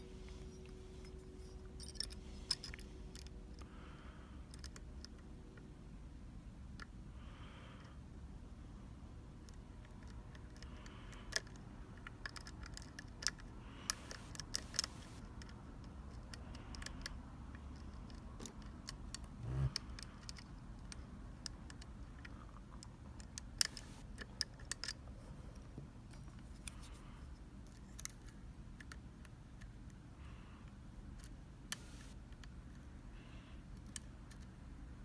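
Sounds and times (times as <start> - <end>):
lock picks clicking in lock: 1.8 - 3.3, 11.3 - 16.0, 23.2 - 25.0.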